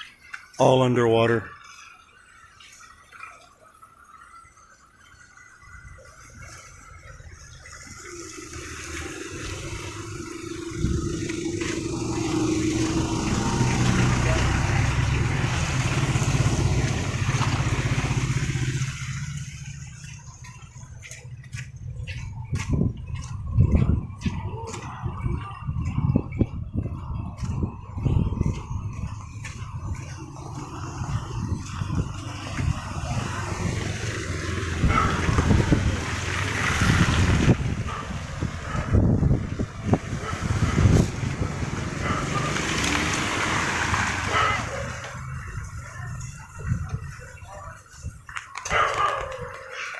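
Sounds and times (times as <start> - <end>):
wind and rain hiss: 4.0 - 20.4, 27.8 - 48.4
vehicle engine low pulsing hum: 5.6 - 48.3
gusty rushes of noise: 25.1 - 45.8.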